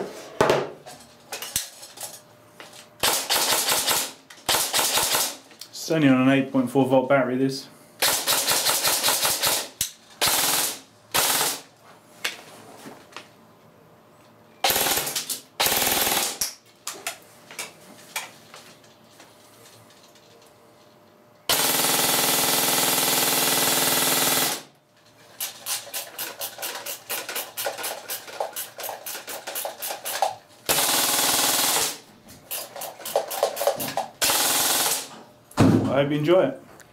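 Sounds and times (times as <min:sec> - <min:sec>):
airsoft gun firing: 0:03.0 - 0:05.4, 0:08.0 - 0:11.7, 0:14.6 - 0:16.5, 0:21.5 - 0:24.7, 0:29.2 - 0:32.0, 0:32.6 - 0:35.1.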